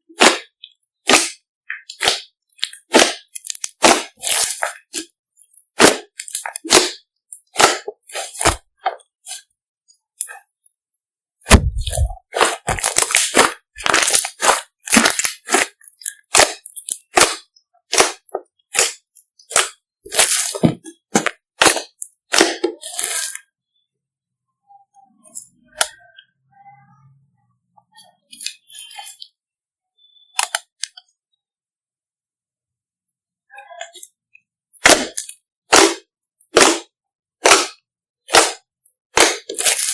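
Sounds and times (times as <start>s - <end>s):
slime crackling and popping: 0.2s - 5.1s, 5.8s - 8.7s, 11.5s - 23.4s, 34.8s - 38.6s, 39.2s - 39.9s.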